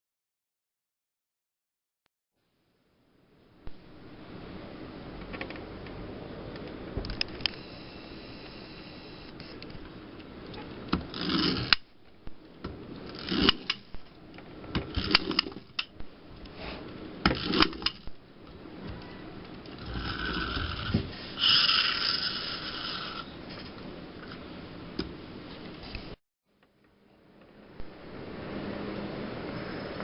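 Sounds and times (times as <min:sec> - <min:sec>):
clockwork spring motor whirring: 0:11.0 - 0:11.9, 0:13.0 - 0:13.9, 0:14.9 - 0:15.9, 0:17.2 - 0:18.1, 0:19.8 - 0:23.3
toy airplane clicking and clattering: 0:11.1 - 0:11.8, 0:13.0 - 0:13.8, 0:14.9 - 0:15.9, 0:21.4 - 0:23.2.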